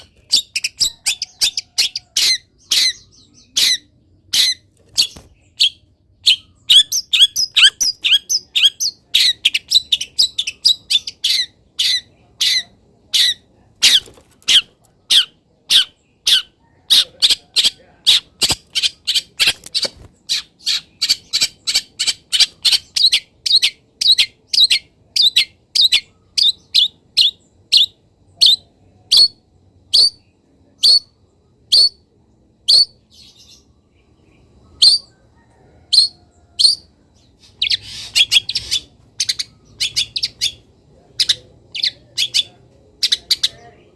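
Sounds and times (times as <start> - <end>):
bird singing sharp calls: 0.0 - 29.3.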